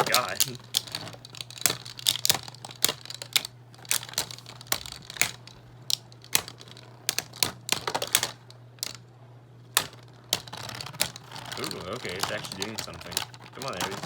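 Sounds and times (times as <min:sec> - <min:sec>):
spinning tops clacking: 0:00.0 - 0:09.0, 0:09.7 - 0:14.0
steady low hum: 0:00.0 - 0:14.0.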